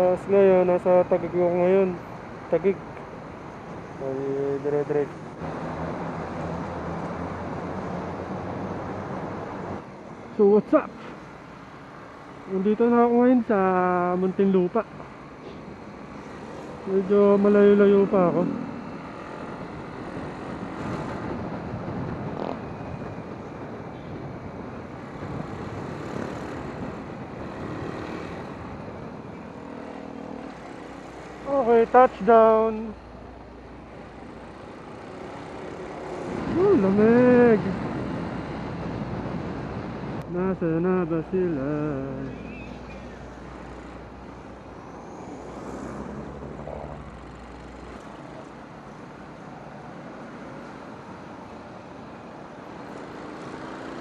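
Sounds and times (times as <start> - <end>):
motorcycle road noise: 0.0 - 54.0
wind rush: 20.2 - 29.4, 35.9 - 40.2.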